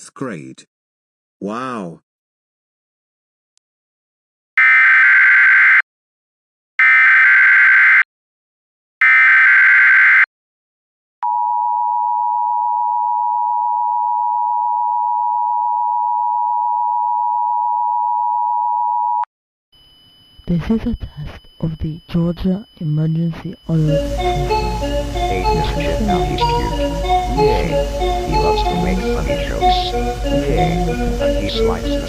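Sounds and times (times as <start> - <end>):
two-tone attention signal: 19.8 - 32.0.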